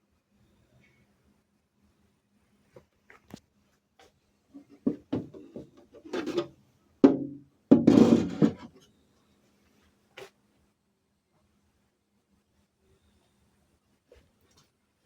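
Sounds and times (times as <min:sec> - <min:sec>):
irregular knocks and clunks: 0:04.8 - 0:06.4.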